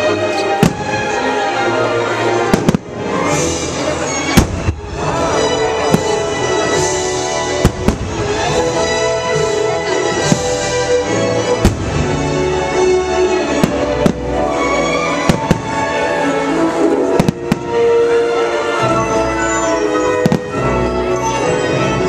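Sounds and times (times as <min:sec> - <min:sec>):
orchestral show music: 0:00.0 - 0:22.0
fireworks bangs: 0:00.4 - 0:01.4, 0:02.4 - 0:12.8, 0:13.4 - 0:18.2, 0:19.4 - 0:21.4.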